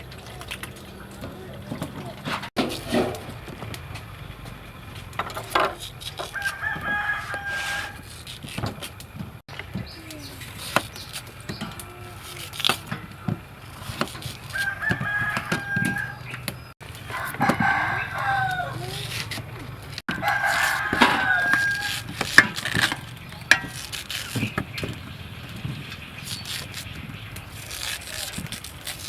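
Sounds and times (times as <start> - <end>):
rooster crowing: 6.2 - 8.1, 14.5 - 16.4, 17.1 - 19.2, 20.1 - 22.2.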